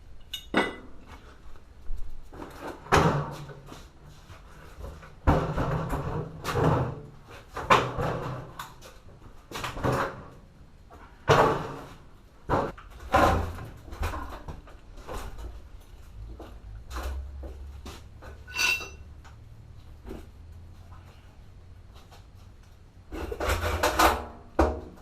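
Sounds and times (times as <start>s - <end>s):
metal clanks and knocks: 0.2s - 1.2s, 4.9s - 10.4s, 11.2s - 15.6s, 18.2s - 19.1s.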